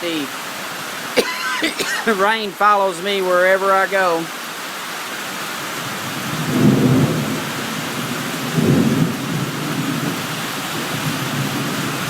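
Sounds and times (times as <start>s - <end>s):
heavy rain pouring: 0.0s - 12.0s
thunder rumbling: 5.9s - 12.0s.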